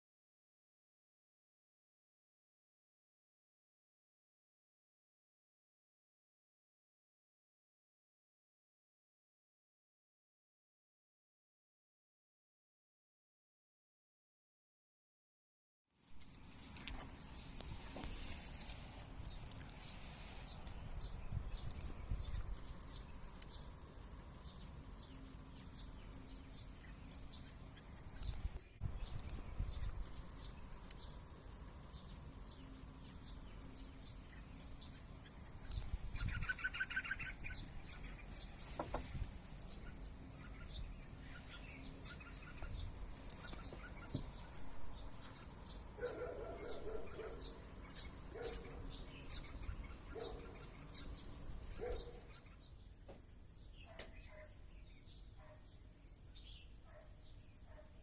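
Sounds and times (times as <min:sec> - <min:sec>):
birds chirping: 0:16.2 - 0:58.0.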